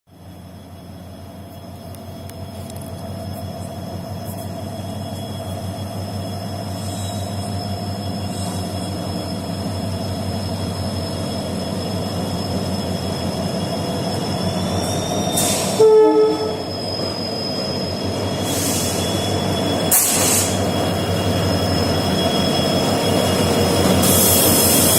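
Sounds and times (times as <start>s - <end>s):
diesel locomotive engine drone: 0.1s - 24.9s
locomotive horn blast: 15.6s - 16.6s.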